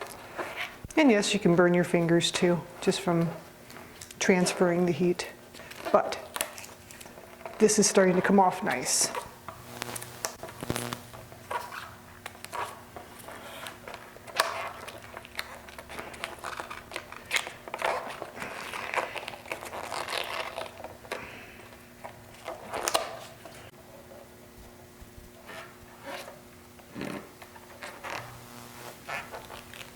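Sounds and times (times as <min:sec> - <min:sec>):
faint steady hum: 0:04.8 - 0:13.1, 0:23.4 - 0:29.9
vinyl decal peeling off plastic: 0:09.1 - 0:21.1, 0:22.3 - 0:23.6, 0:29.0 - 0:29.9.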